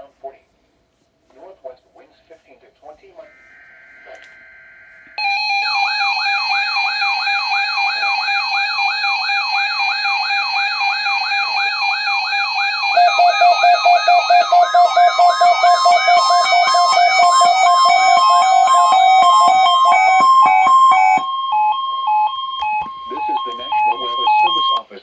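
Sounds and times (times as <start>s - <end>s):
siren-like alarm wail: 3.3s - 24.8s
steady alarm tone: 3.3s - 24.9s
loud pulsing beep: 12.6s - 24.9s.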